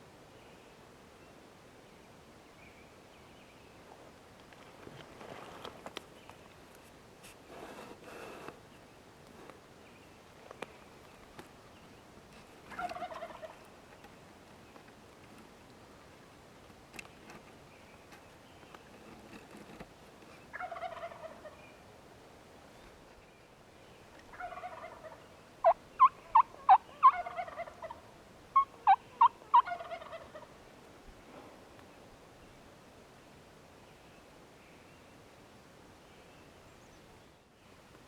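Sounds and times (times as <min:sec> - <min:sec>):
turkey gobbling: 0:12.7 - 0:13.6, 0:20.5 - 0:21.6, 0:24.3 - 0:30.6.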